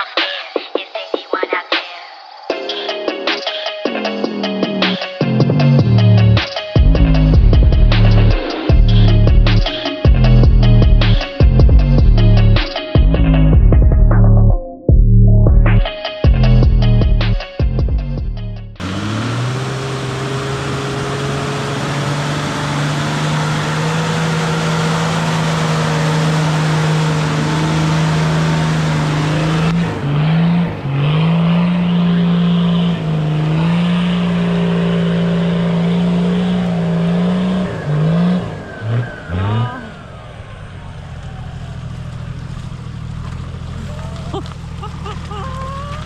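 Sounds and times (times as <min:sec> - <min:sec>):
engine revving under load: 0:18.8 - 0:46.0.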